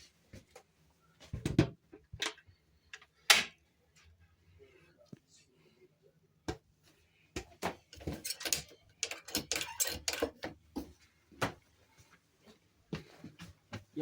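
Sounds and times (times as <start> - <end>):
galley fittings clicking and clattering: 7.9 - 10.6.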